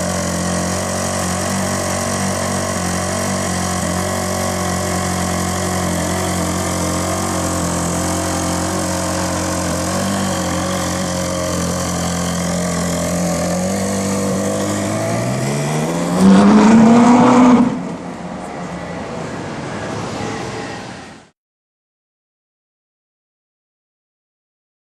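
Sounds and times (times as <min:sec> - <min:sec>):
sports car engine idling: 0:00.0 - 0:16.7
engine revving in acceleration: 0:00.0 - 0:18.5.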